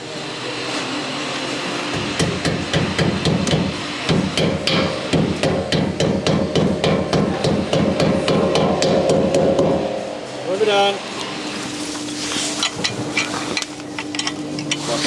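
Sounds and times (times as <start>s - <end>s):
hammer knocking: 2.0s - 9.8s.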